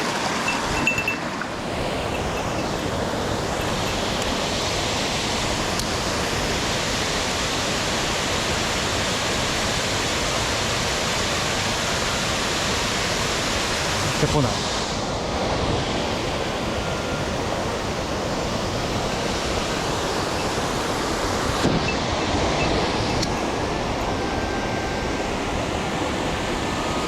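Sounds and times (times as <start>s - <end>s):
stream running: 0.0s - 27.0s.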